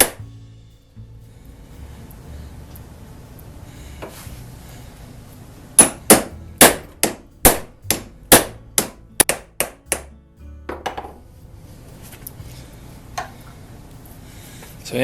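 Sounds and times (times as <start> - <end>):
hammer striking hole punch: 0.0 - 0.2, 5.8 - 10.1.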